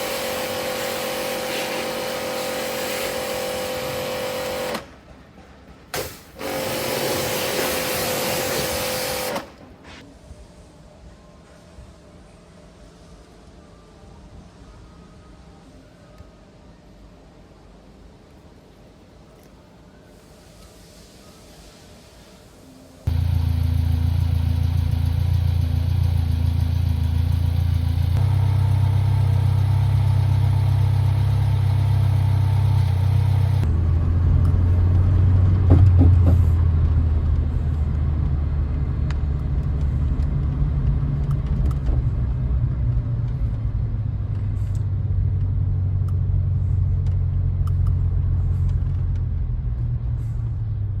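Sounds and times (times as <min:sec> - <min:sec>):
car engine and road noise: 0:23.1 - 0:51.0.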